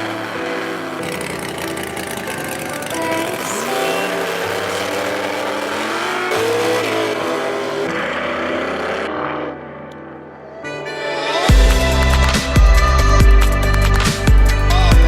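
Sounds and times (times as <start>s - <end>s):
car engine revving: 0.0s - 9.6s.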